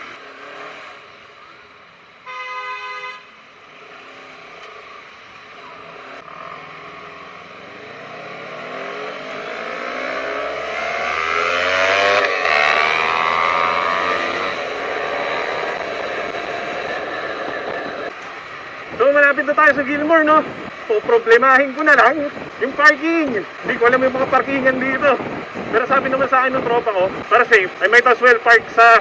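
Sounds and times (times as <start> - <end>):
motorcycle engine accelerating: 3.7 - 19.2.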